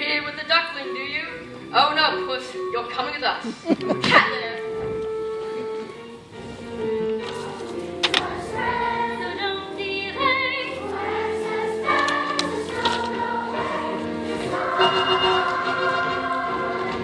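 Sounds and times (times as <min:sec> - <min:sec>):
instrumental accompaniment: 0:00.0 - 0:17.0
chorus singing together: 0:06.7 - 0:17.0.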